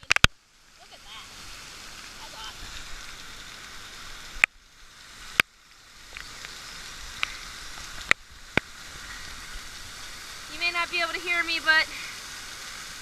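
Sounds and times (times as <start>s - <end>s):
waterfall spray hissing: 0.0s - 13.0s.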